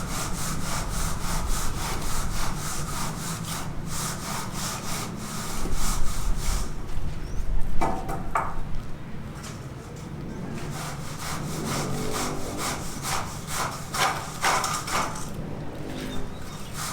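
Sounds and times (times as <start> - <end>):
hand saw cutting wood: 0.0 - 6.7, 10.5 - 16.9.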